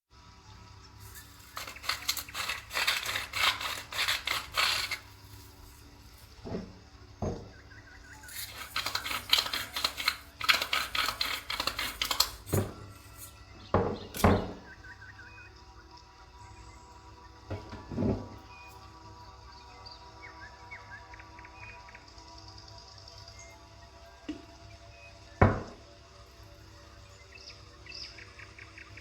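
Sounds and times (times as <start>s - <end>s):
kitchen utensils clattering: 8.2s - 14.6s, 17.5s - 18.4s
louder thunks: 25.4s - 25.8s.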